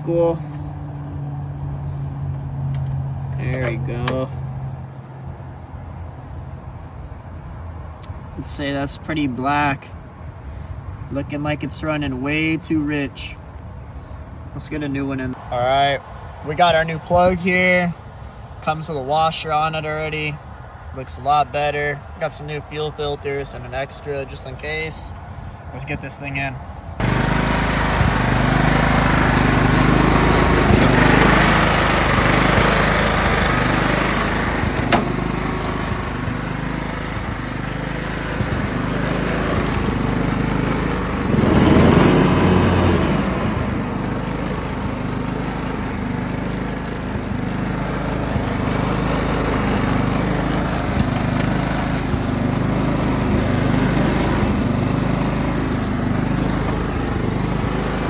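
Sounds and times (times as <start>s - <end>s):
lawn mower engine running: 0.0s - 5.2s, 27.0s - 58.0s.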